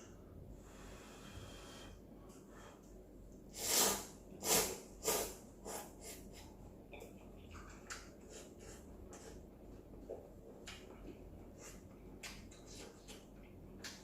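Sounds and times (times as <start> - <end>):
person slurping noodles: 3.6 - 6.3.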